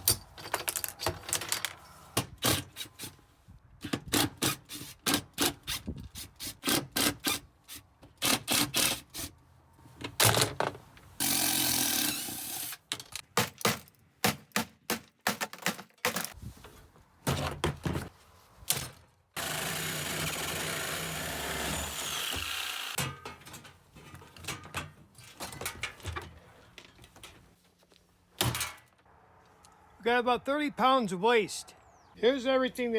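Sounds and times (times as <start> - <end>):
metal and plastic parts clattering: 0.0 - 2.8, 10.0 - 10.8, 12.1 - 16.4, 22.9 - 27.6, 28.4 - 29.0.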